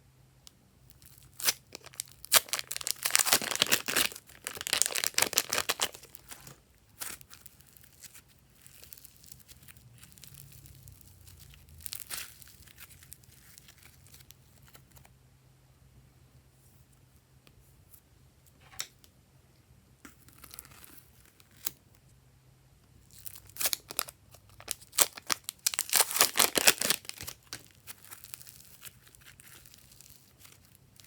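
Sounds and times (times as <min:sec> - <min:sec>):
slime crackling and tearing: 0:00.9 - 0:14.9, 0:23.1 - 0:31.0.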